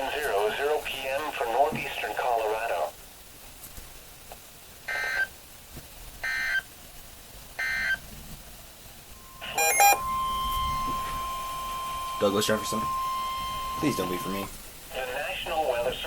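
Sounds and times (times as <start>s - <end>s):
steady high alert tone: 9.1s - 14.5s
short digital data bursts: 9.2s - 14.5s.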